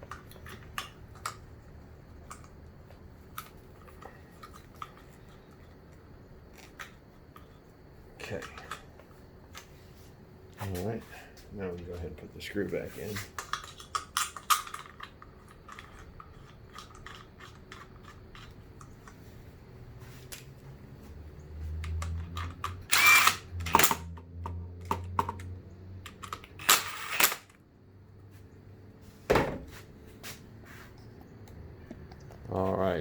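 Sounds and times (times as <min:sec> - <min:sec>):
clicks and clatter of parts: 0:00.0 - 0:01.5, 0:02.2 - 0:05.8, 0:08.2 - 0:09.7, 0:13.1 - 0:19.2, 0:21.8 - 0:27.6
cordless drill motor: 0:21.9 - 0:24.1, 0:26.5 - 0:27.5.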